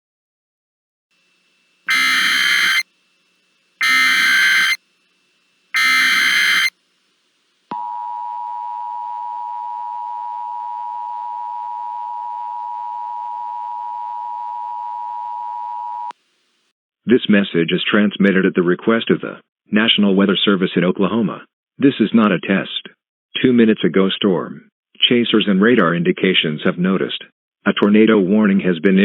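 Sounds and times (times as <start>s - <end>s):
two-tone attention signal: 1.9s - 2.8s, 3.8s - 4.8s, 5.8s - 6.7s
screeching data bursts: 1.9s - 2.9s, 3.8s - 4.8s, 5.7s - 6.8s.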